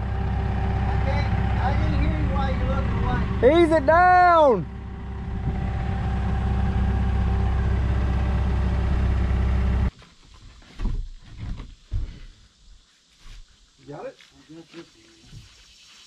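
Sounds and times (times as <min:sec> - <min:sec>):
lifting machine engine running: 0:00.0 - 0:09.9.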